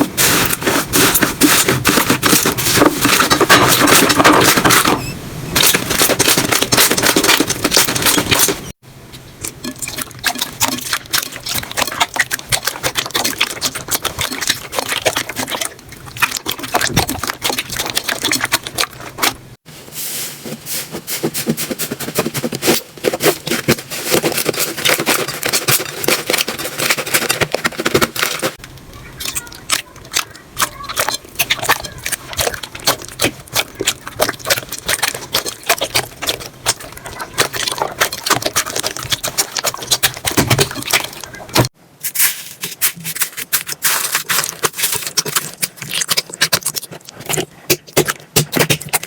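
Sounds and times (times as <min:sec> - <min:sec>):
slime crackling and popping: 0:05.6 - 0:08.8, 0:09.5 - 0:19.5, 0:22.1 - 0:41.7, 0:43.2 - 0:49.0.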